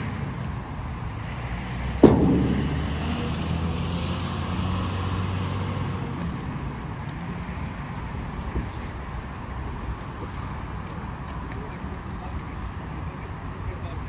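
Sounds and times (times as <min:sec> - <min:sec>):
diesel engine droning: 0:00.0 - 0:07.0
short knock: 0:02.0 - 0:03.9.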